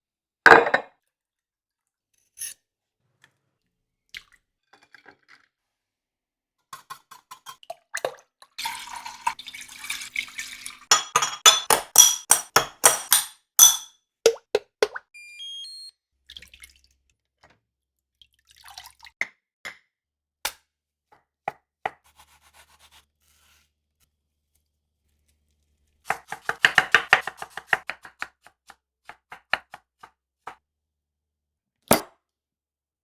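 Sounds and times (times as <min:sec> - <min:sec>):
spoon clinking against glass: 0:10.9 - 0:14.4
spoon tapping: 0:10.9 - 0:15.7.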